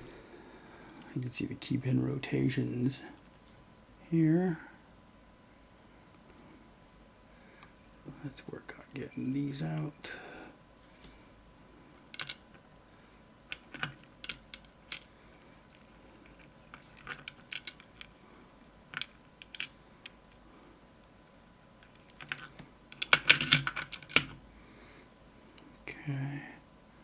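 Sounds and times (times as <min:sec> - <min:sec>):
small lock parts clicking: 0:12.1 - 0:15.1, 0:15.7 - 0:18.3, 0:18.9 - 0:20.4, 0:21.2 - 0:24.4.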